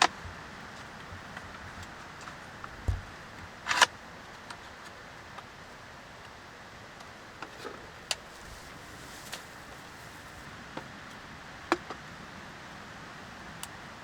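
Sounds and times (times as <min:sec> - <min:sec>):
steady background hiss: 0:00.0 - 0:14.0
low thump: 0:02.8 - 0:03.1.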